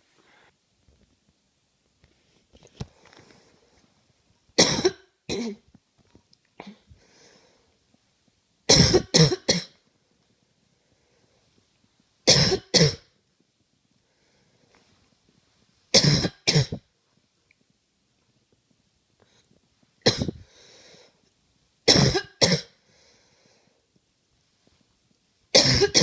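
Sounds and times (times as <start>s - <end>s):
person coughing: 4.6s - 5.6s, 6.6s - 6.9s, 8.7s - 9.8s, 12.3s - 13.1s, 16.0s - 16.8s, 20.0s - 20.4s, 21.9s - 22.8s, 25.6s - 26.0s.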